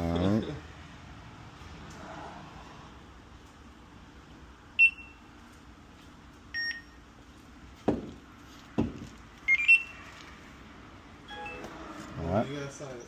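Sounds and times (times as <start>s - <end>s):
checkout terminal beeps: 4.8s - 5.3s, 6.5s - 7.0s, 9.5s - 10.1s, 11.2s - 11.9s
dull thumps: 7.8s - 9.2s.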